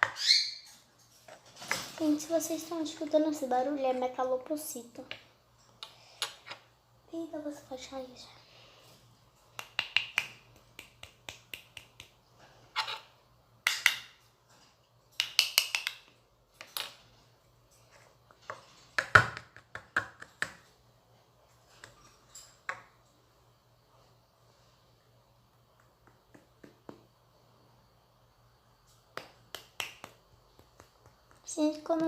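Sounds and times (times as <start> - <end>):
faint low hum: 20.6 - 32.0.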